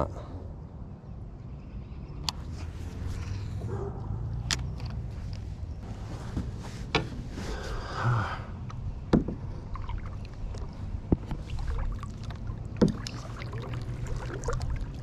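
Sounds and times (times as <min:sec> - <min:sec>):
steady low rumble: 0:00.0 - 0:15.0
sharp knocks on hull: 0:09.1 - 0:09.5, 0:12.8 - 0:13.2.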